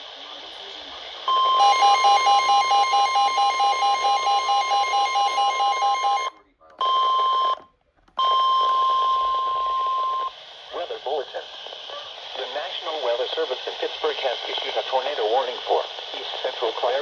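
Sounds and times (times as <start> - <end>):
steady high alarm tone: 1.3 - 7.5.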